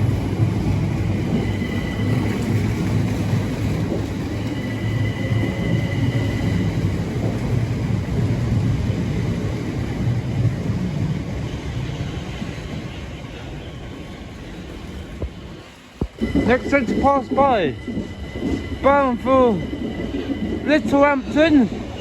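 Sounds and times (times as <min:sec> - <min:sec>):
train rumbling past: 0:00.0 - 0:22.0
high whine: 0:16.0 - 0:22.0.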